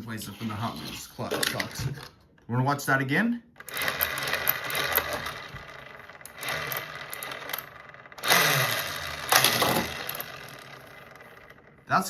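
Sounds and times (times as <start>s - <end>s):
toy car launcher whirring: 3.6s - 12.0s.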